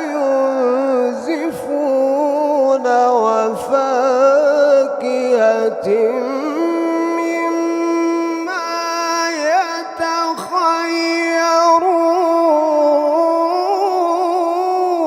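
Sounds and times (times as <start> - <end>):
man chanting recitation: 0.0 - 15.0.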